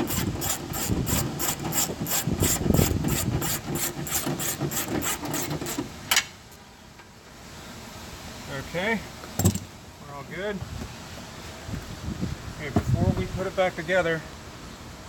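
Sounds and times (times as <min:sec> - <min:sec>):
ratchet wrench ratcheting: 0:00.0 - 0:05.8
sharp ratchet click: 0:00.0 - 0:06.3.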